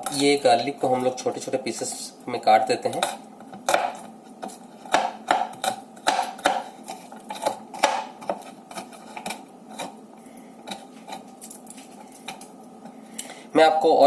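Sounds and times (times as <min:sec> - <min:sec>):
knife chopping on board: 0:02.9 - 0:10.0.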